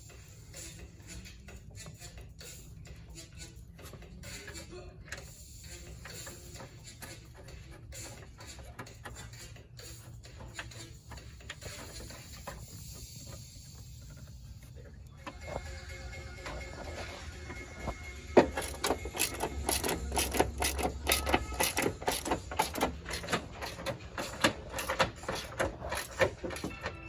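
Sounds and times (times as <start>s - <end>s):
metal tools clattering on metal: 18.4s - 26.9s.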